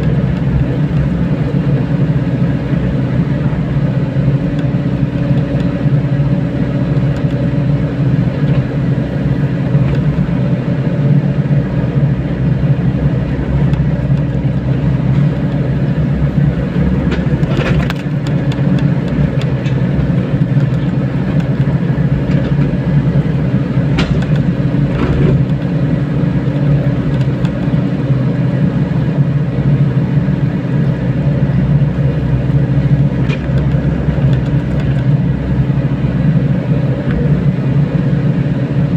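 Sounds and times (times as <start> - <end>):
excavator diesel engine: 0.0 - 38.9.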